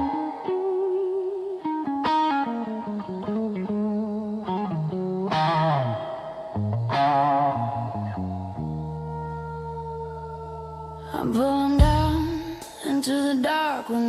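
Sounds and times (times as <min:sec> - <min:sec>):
distorted electric guitar: 0:00.0 - 0:12.9
low bass line: 0:11.8 - 0:12.6.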